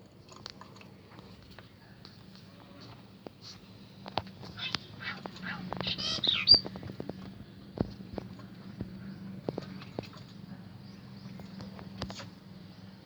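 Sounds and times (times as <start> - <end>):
lovebirds chirping: 4.6 - 6.7.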